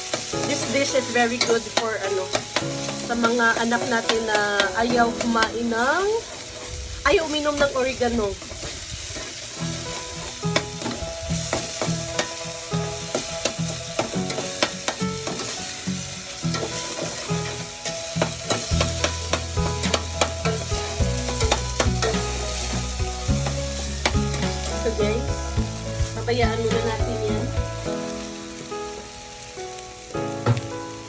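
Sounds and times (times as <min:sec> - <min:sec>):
utensil scraping a pan: 0:00.0 - 0:27.9
onions sizzling in a pan: 0:00.0 - 0:31.0.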